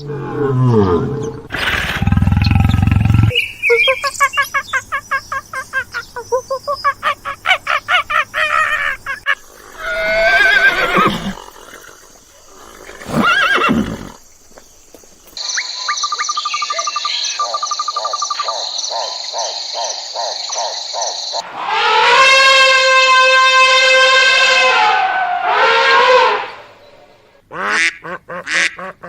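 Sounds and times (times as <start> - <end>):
wavering animal calls: 0.0 - 15.0
rapid pulsing animal call: 7.0 - 14.3
croaking: 7.0 - 15.4.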